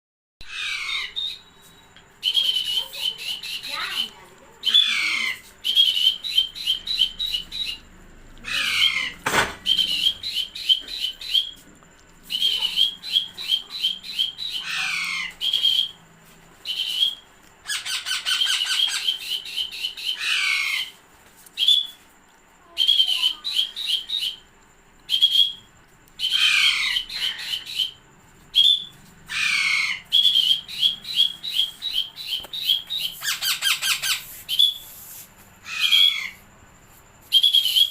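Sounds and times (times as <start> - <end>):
parrot screeching: 0.4 - 1.4, 4.6 - 5.4, 8.4 - 10.0, 12.3 - 15.8, 17.6 - 19.1, 20.0 - 21.0, 26.2 - 28.0, 28.6 - 34.3, 35.6 - 36.4
parrot squawking: 0.4 - 1.4, 2.3 - 7.8, 8.4 - 11.6, 12.3 - 16.0, 17.6 - 21.0, 26.2 - 28.0, 28.6 - 34.8, 35.6 - 36.4.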